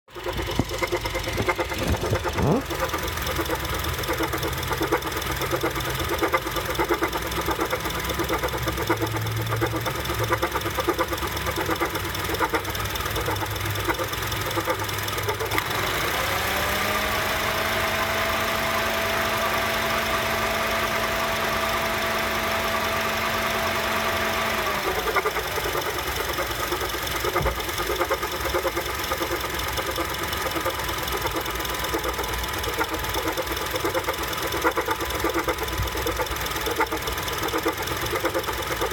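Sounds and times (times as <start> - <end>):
car engine idling: 0.0 - 38.9
irregular engine clunking: 0.1 - 15.8, 24.5 - 38.9.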